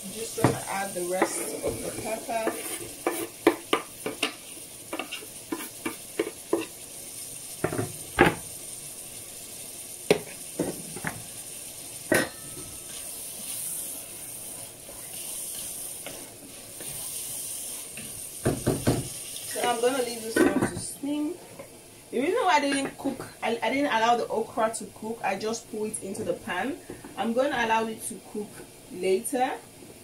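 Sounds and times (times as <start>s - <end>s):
stew sizzling in a pan: 0.0s - 30.0s
utensil knocking against pan: 18.4s - 19.1s.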